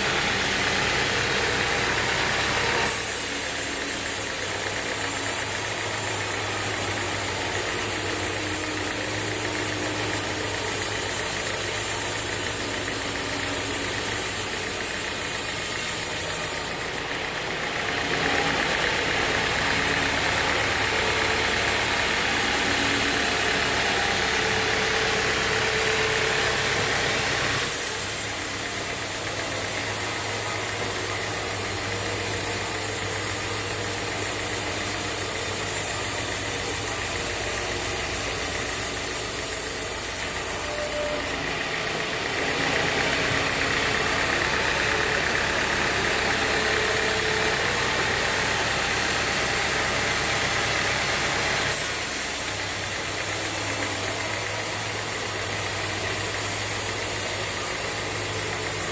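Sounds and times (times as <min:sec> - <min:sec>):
sawmill machinery running: 0:00.0 - 0:58.9.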